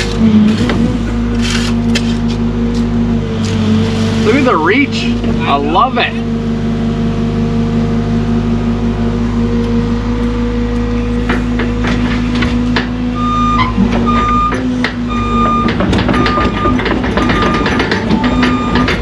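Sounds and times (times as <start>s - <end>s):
excavator diesel engine running: 0.0s - 19.0s
backup alarm beeping: 13.1s - 19.0s
machine clanks: 13.7s - 19.0s.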